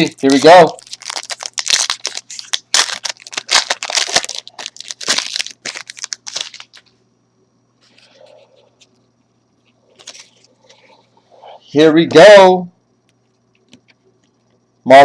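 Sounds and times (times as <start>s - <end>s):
wrapper tearing and crinkling: 0.0s - 6.9s.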